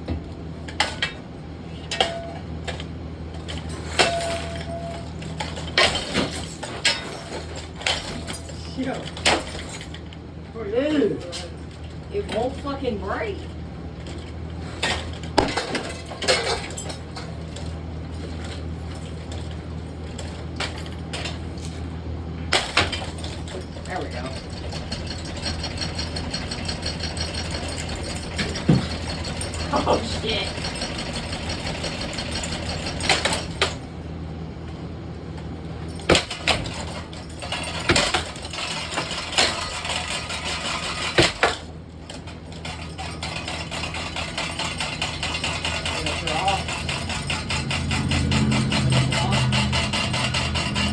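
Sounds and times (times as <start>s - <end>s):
ceiling fan being smashed: 3.4s - 10.1s, 14.8s - 19.5s, 22.5s - 23.6s, 35.9s - 50.9s
knocks and clatters: 14.0s - 19.6s, 22.5s - 33.8s, 35.8s - 50.9s
low hum: 46.6s - 50.9s.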